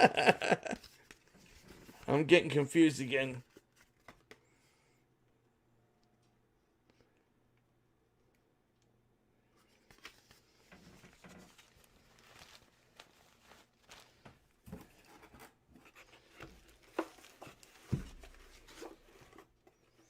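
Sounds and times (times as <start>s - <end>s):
packaging rustling and clicking: 9.9s - 19.8s.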